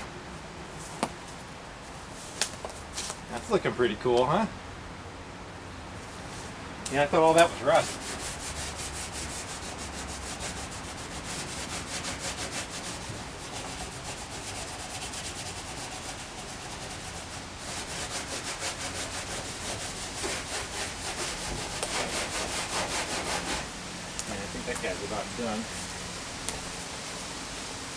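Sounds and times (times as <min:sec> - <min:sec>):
sandpaper scrubbing painted steel: 0:07.0 - 0:26.0.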